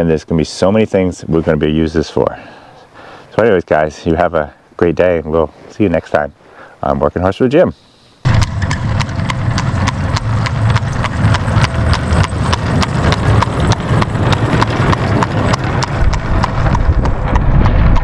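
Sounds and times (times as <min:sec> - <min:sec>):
low steady rumble: 0:08.2 - 0:18.0
horse hooves clip-clopping: 0:08.3 - 0:18.0.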